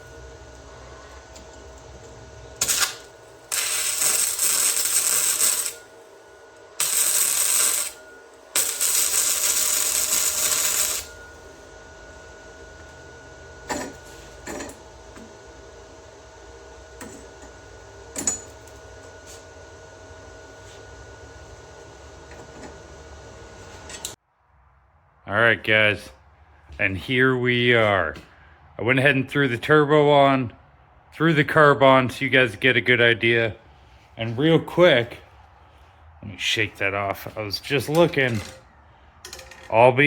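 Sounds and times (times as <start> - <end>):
arc welding crackling: 0.0 - 11.7.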